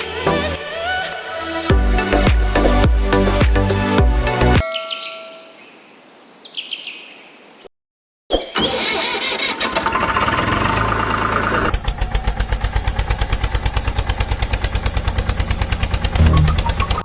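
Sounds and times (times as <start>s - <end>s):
small engine starting and idling: 8.6s - 17.0s.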